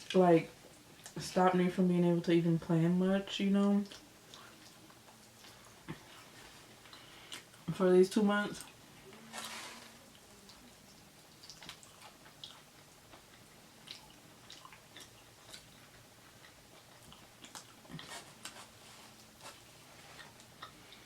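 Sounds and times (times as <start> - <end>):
chewing and mouth clicks: 3.8 - 7.6, 10.1 - 21.0.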